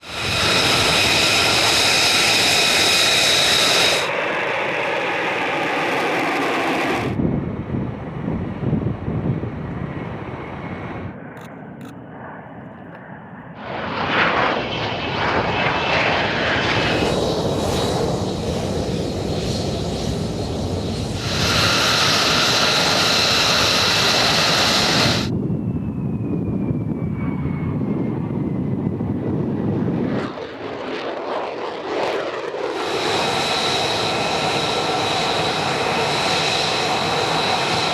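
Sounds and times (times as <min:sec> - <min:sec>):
jet engine rushing: 0:00.0 - 0:37.9
steady high whine: 0:10.0 - 0:25.4, 0:32.6 - 0:37.9.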